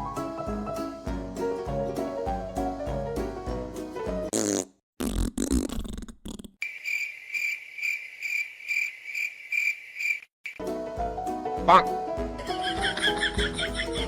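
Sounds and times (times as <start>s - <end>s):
background music: 0.0s - 4.3s, 10.6s - 14.0s
fart sound: 4.3s - 6.6s
cricket chirping: 6.6s - 10.3s.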